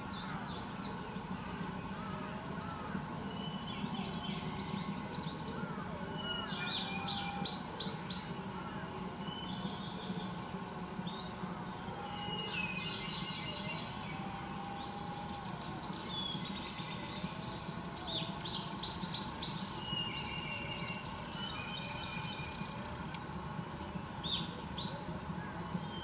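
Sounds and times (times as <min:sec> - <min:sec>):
birds singing: 0:14.8 - 0:22.9.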